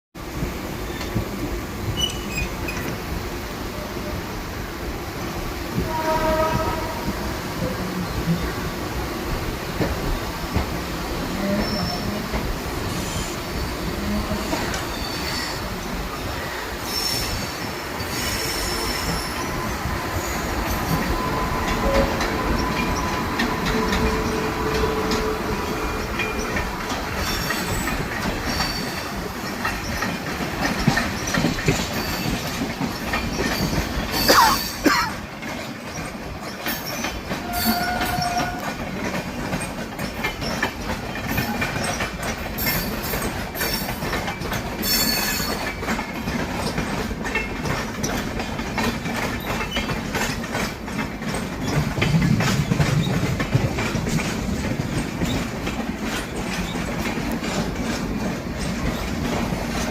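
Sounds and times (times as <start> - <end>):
train wheels clacking on rails: 0.2 - 59.9
train wheel squeal: 1.9 - 3.0, 11.4 - 34.9, 35.5 - 54.3.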